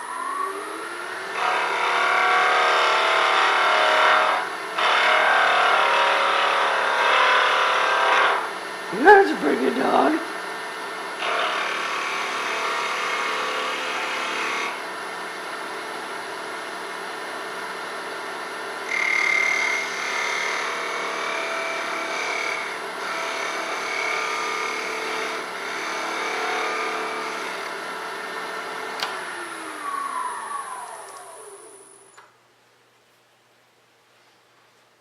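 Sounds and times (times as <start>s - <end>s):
lathe motor hum: 18.9s - 32.1s.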